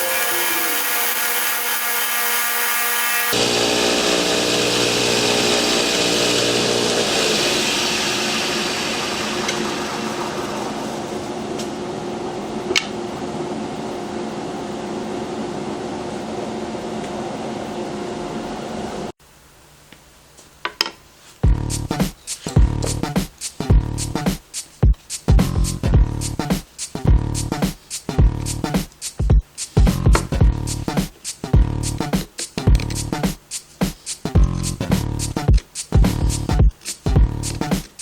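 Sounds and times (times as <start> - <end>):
power tool cutting wood: 0.0 - 11.2.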